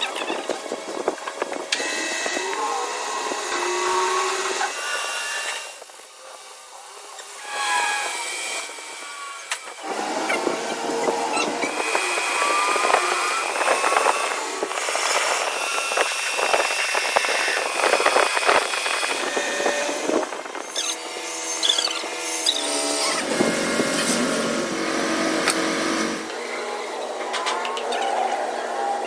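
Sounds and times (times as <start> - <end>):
power tool squealing on metal: 7.1 - 29.0.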